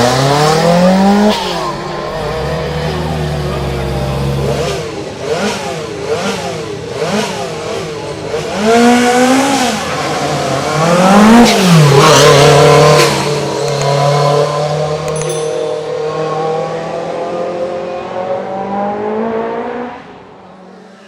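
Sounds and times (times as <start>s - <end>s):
rally car engine revving: 0.0s - 15.1s.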